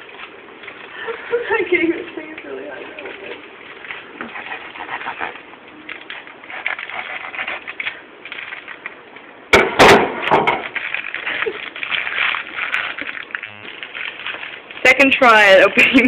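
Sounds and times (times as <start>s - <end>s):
plastic packet crinkling: 5.7s - 9.3s, 10.6s - 16.0s
packet bursting open: 10.3s - 15.0s.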